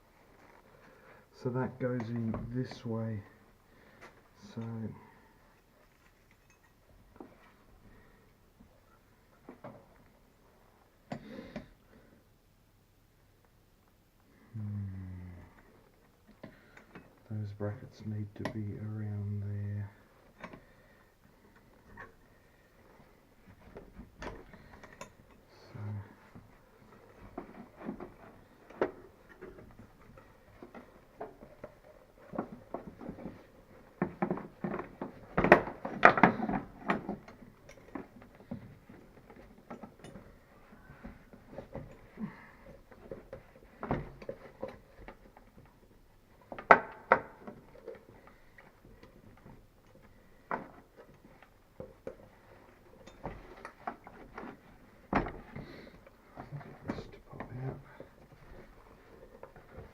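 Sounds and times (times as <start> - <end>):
clicks and knocks of handling: 15.6 - 19.4, 20.0 - 59.9.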